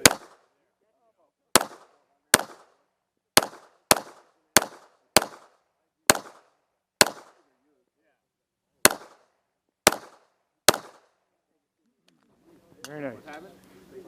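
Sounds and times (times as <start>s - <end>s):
pistol shots with echo: 0.0s - 0.6s, 1.5s - 7.6s, 8.8s - 11.2s.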